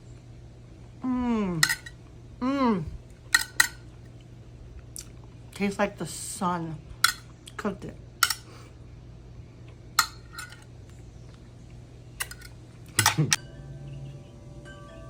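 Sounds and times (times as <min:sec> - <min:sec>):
cutlery clinking on a plate: 0:01.6 - 0:02.0, 0:03.4 - 0:03.8.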